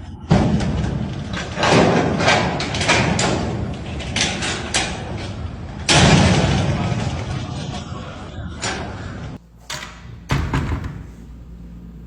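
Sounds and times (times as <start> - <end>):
door banging against its lock: 9.6 - 11.2.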